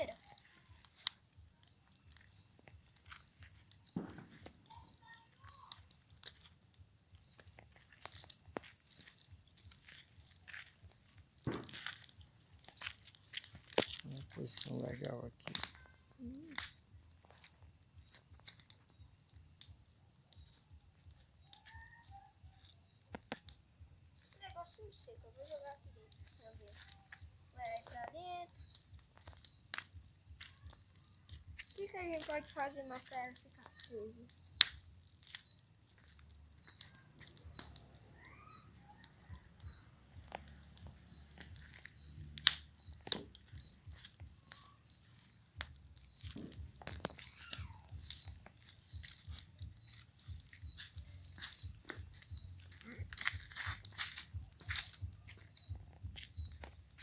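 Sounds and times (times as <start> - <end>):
bonfire popping and crackling: 0.0 - 57.0
crickets trilling: 0.0 - 57.0.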